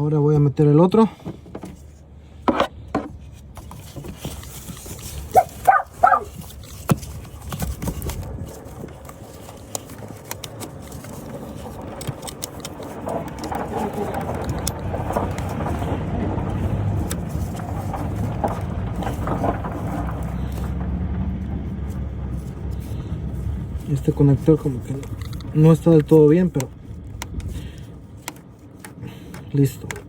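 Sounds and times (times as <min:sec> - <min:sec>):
vehicle engine low hum: 0:00.0 - 0:30.0.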